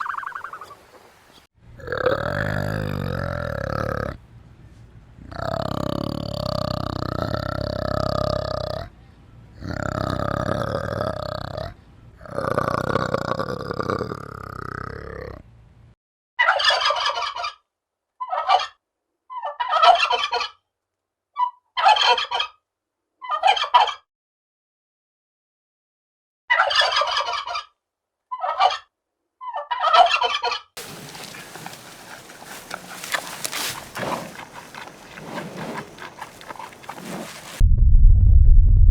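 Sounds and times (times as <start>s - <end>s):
turkey gobbles: 0.0s - 3.9s, 30.8s - 37.6s
long drawn-out animal calls: 30.8s - 37.6s.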